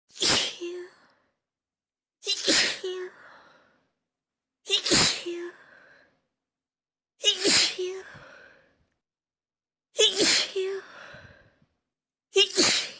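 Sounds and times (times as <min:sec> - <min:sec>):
person sneezing: 0:02.3 - 0:03.0, 0:04.7 - 0:05.3, 0:07.2 - 0:07.8, 0:10.0 - 0:10.6.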